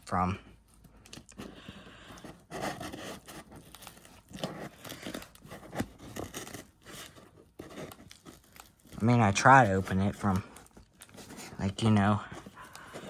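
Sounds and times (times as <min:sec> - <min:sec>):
cardboard package tearing: 0:02.4 - 0:11.7.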